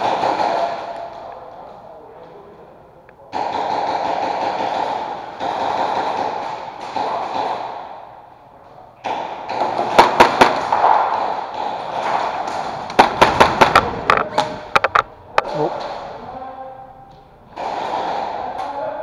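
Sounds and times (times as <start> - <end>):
airsoft guns firing: 0.0 - 1.3, 3.3 - 8.1, 9.0 - 16.2, 17.5 - 19.0.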